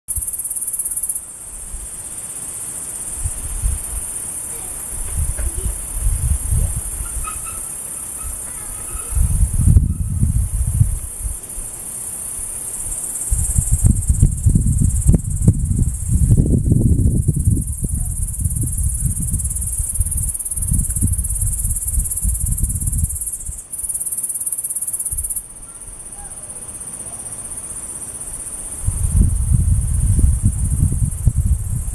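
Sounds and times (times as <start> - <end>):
insect high-pitched buzz: 0.1 - 31.9
low rumbling on microphone: 5.0 - 7.4, 8.2 - 11.4, 13.3 - 23.6, 28.9 - 31.9.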